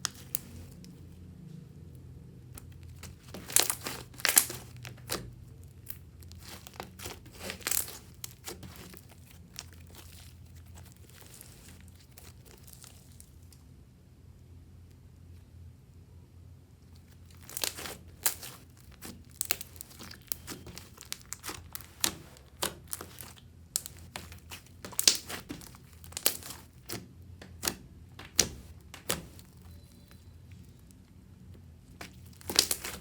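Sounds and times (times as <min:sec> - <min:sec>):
slime popping and crackling: 0:00.0 - 0:00.8, 0:02.6 - 0:13.6, 0:17.0 - 0:30.1, 0:31.9 - 0:33.0
slime squeezed in plastic bag: 0:02.6 - 0:13.3, 0:17.1 - 0:27.0, 0:32.0 - 0:33.0.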